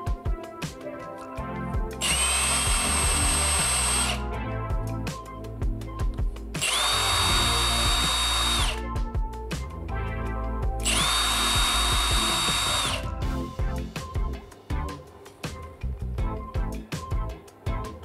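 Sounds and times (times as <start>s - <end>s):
background music: 0.0s - 18.0s
impact wrench whine: 2.0s - 4.2s, 6.6s - 8.8s, 10.8s - 13.1s.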